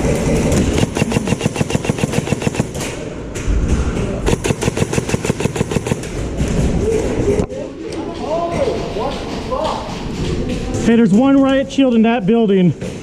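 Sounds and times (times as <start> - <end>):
airsoft rifle firing full-auto: 0.6 - 2.8, 4.3 - 6.2.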